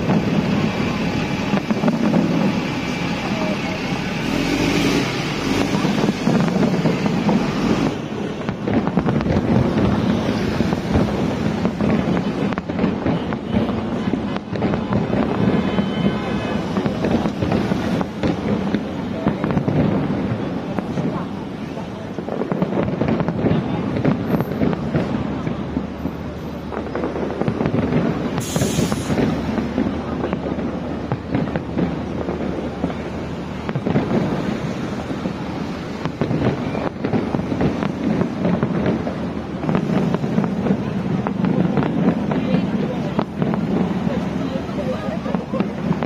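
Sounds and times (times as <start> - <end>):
fireworks bangs and crackling: 0.0 - 46.0
wind buffeting microphone: 0.0 - 46.0.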